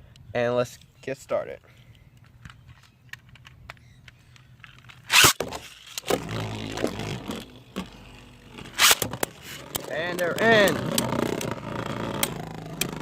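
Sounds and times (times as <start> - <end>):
ripcord rasping through launcher: 5.0 - 7.9, 8.5 - 13.0.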